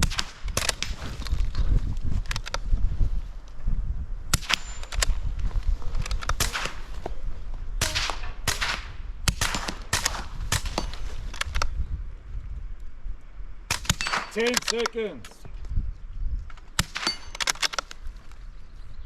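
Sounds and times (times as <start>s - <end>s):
rifle shots cracking: 0.0s - 1.0s, 4.3s - 5.2s, 6.1s - 7.2s, 7.8s - 11.5s, 13.7s - 15.0s, 16.7s - 18.0s.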